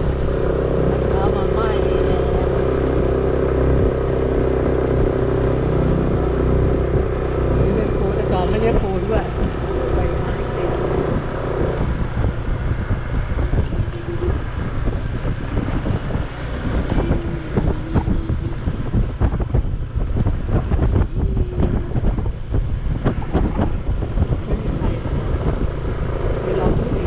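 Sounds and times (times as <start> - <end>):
gusty wind buffeting microphone: 0.0 - 27.0.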